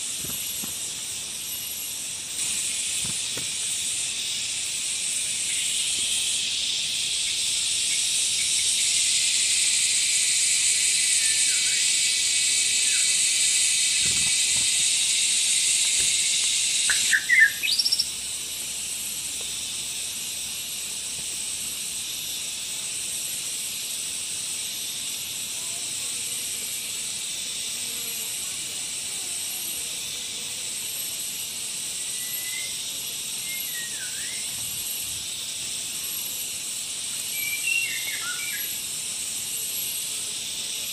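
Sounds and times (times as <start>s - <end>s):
high-pitched hiss: 0.0s - 40.9s
rising whistled bird notes: 11.2s - 11.9s, 16.8s - 18.1s, 32.1s - 32.8s, 33.4s - 34.6s, 37.3s - 38.8s.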